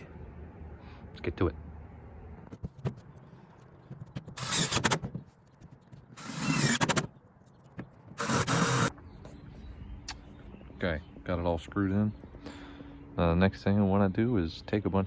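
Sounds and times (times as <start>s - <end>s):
power drill driving screws into metal: 4.4s - 5.1s, 6.2s - 7.1s, 8.2s - 8.9s.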